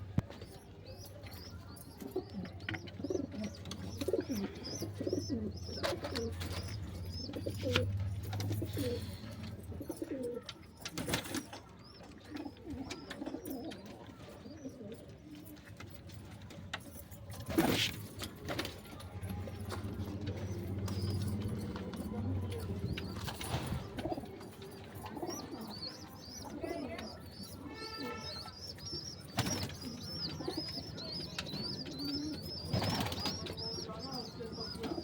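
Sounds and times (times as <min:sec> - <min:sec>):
pigeons cooing: 0:02.0 - 0:10.5, 0:19.5 - 0:35.0.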